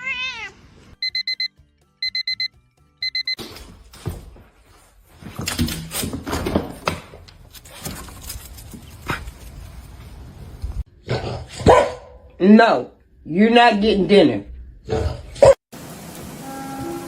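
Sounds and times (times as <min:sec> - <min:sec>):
electronic alarm beeping: 0:01.0 - 0:03.4.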